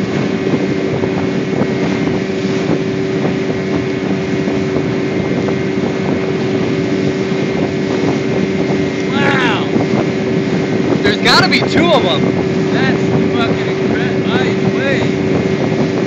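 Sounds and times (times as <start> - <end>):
boat motor humming: 0.0 - 16.0
wind buffeting microphone: 0.0 - 16.0.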